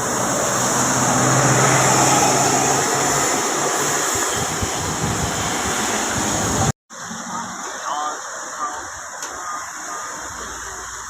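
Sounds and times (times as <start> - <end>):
engine hum: 0.0 - 7.8
rushing road noise: 0.0 - 11.0.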